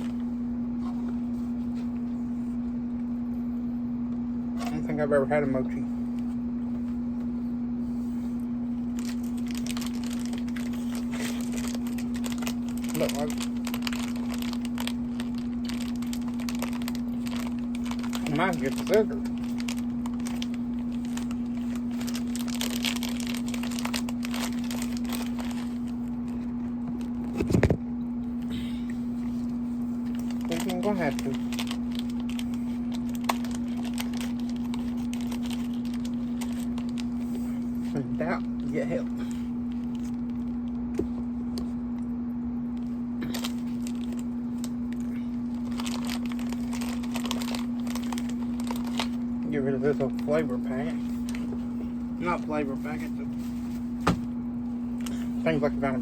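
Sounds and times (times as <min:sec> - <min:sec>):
air conditioner hum: 0:00.0 - 0:56.0
plastic packaging crinkling: 0:08.8 - 0:27.4, 0:29.1 - 0:40.8, 0:42.8 - 0:56.0.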